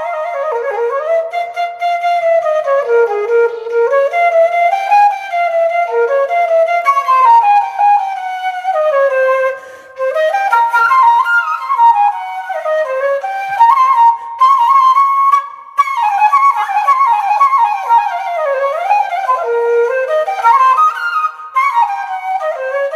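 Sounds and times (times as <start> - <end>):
flute melody with ornamented runs: 0.0 - 22.9.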